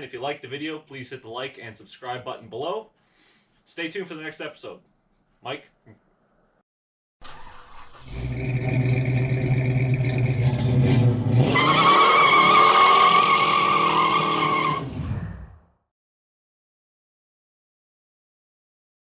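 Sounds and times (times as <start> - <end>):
car engine revving: 7.3 - 15.0
tyre squeal: 11.5 - 14.9.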